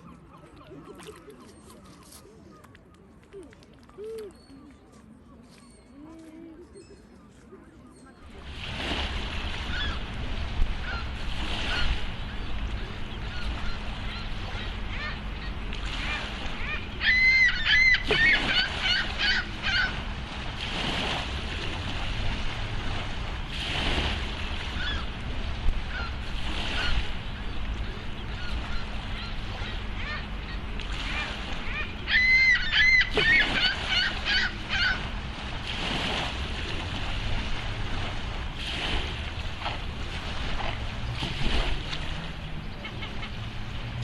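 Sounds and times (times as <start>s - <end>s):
steady low rumble: 8.1s - 44.0s
swans calling: 9.4s - 20.6s, 24.6s - 35.7s.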